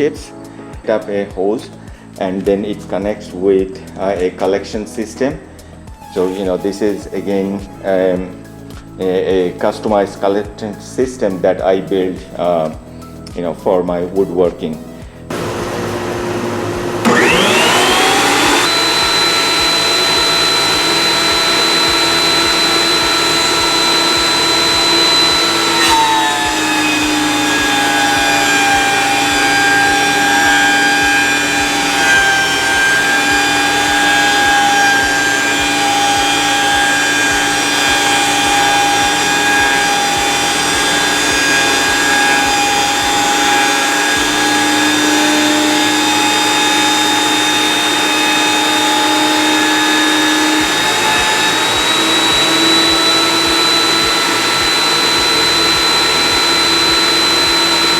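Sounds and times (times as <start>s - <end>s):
planer motor whine: 15.3s - 57.9s.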